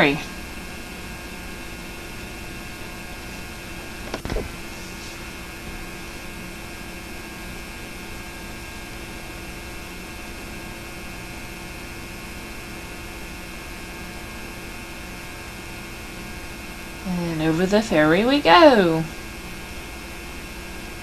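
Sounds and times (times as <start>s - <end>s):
mains hum: 0.0s - 21.0s
tape hiss: 16.9s - 19.3s.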